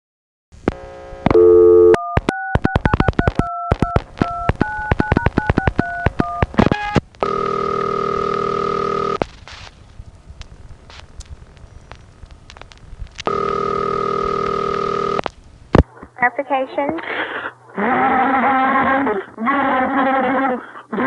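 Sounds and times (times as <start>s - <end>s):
steady telephone tone: 0.8s - 9.2s, 13.3s - 15.2s
telephone dial tone: 1.3s - 9.2s, 13.3s - 15.2s
two-tone dialing beeps: 1.3s - 9.2s, 13.3s - 15.2s.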